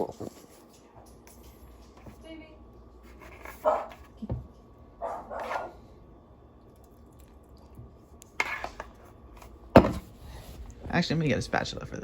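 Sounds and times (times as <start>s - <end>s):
dog barking: 3.6s - 4.0s, 5.0s - 5.8s.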